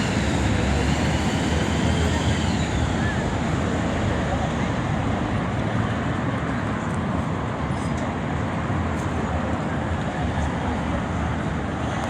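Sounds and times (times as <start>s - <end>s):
road traffic rumble: 0.0s - 12.0s.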